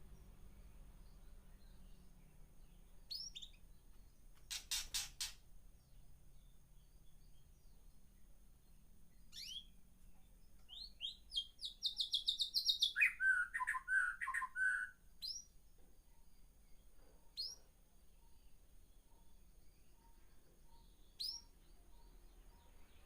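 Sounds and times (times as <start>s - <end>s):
songbird singing: 0.0s - 23.0s
sharp down-slurred bird calls: 0.1s - 5.5s, 9.2s - 9.8s, 10.6s - 15.5s.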